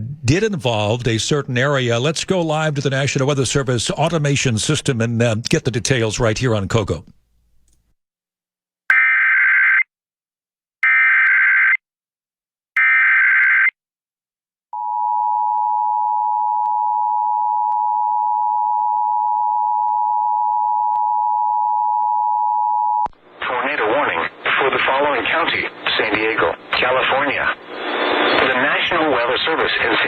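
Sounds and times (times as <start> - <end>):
long steady attention tone: 14.7 - 23.1.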